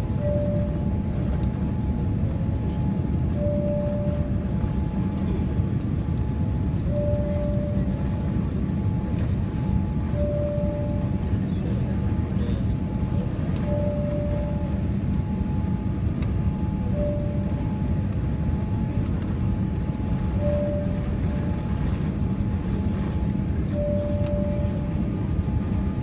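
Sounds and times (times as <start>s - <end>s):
airplane cabin roar: 0.0s - 26.0s
faint steady hum: 0.0s - 26.0s
short beep: 0.2s - 0.9s, 3.3s - 4.4s, 6.8s - 8.0s, 10.1s - 11.2s, 13.6s - 14.9s, 16.9s - 17.7s, 20.4s - 21.4s, 23.7s - 25.0s.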